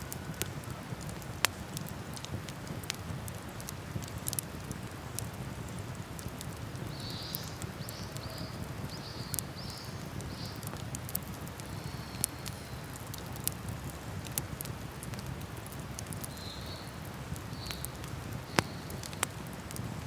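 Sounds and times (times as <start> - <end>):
campfire crackling and popping: 0.0 - 20.0
bird chirping: 6.9 - 10.7, 16.3 - 19.0.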